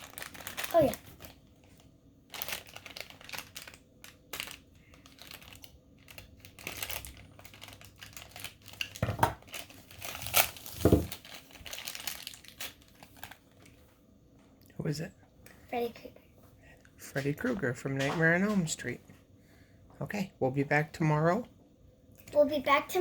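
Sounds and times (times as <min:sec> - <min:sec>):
packaging crinkling and tearing: 0:00.0 - 0:13.8.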